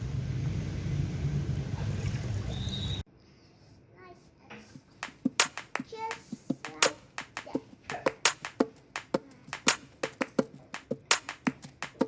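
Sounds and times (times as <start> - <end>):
small hard objects clicking: 5.0 - 12.0.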